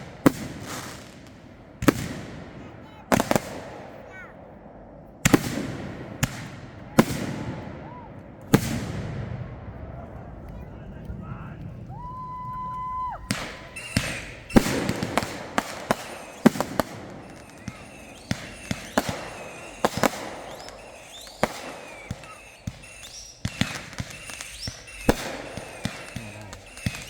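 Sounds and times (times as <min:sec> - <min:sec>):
fireworks bangs and crackles: 0:00.0 - 0:27.0
whistling tone: 0:11.8 - 0:15.2, 0:15.9 - 0:27.0.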